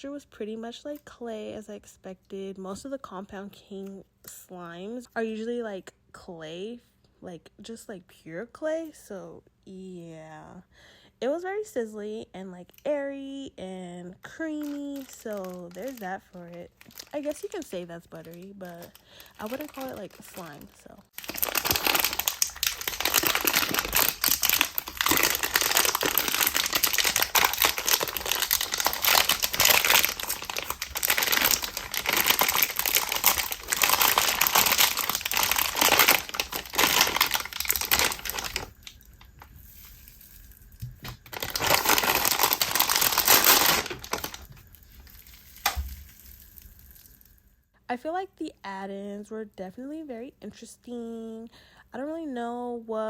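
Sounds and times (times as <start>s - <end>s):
slime squished crackling: 14.6s - 47.3s.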